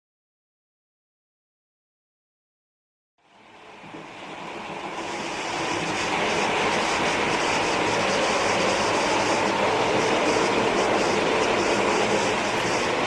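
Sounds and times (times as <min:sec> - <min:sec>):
model train running on track: 0:03.2 - 0:13.0.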